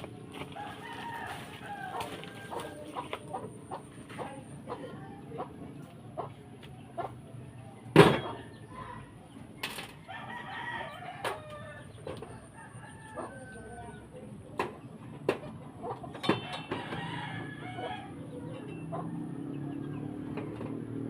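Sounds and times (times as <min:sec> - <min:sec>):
chickens clucking: 0:00.0 - 0:21.0
rooster crowing: 0:00.5 - 0:02.9, 0:10.1 - 0:14.0, 0:16.6 - 0:18.2.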